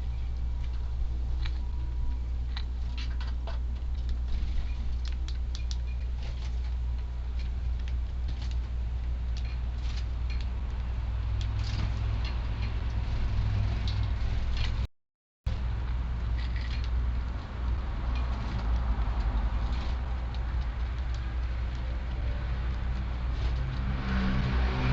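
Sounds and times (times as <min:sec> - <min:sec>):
sparrows pecking and hopping: 0:00.0 - 0:14.8, 0:15.5 - 0:24.9
wind rumbling on microphone: 0:15.6 - 0:24.9.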